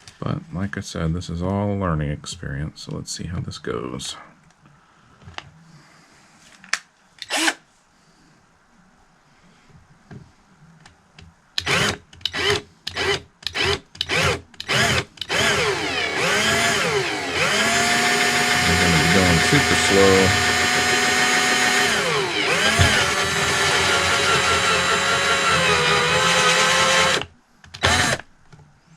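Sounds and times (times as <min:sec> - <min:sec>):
electric drill whining: 0:07.2 - 0:07.6, 0:11.6 - 0:28.3.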